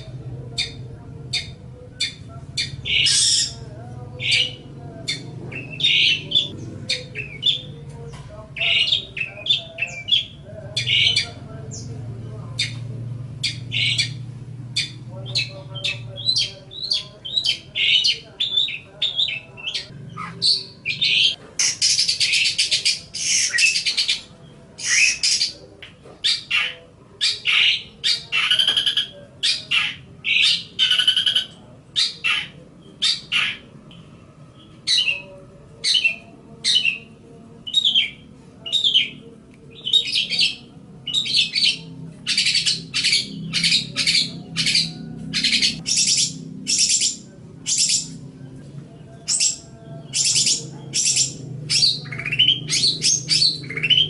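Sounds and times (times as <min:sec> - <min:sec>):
bird singing chattering notes: 0:00.0 - 0:03.6, 0:04.2 - 0:12.0, 0:12.6 - 0:35.2, 0:37.7 - 0:48.2, 0:49.0 - 0:54.0.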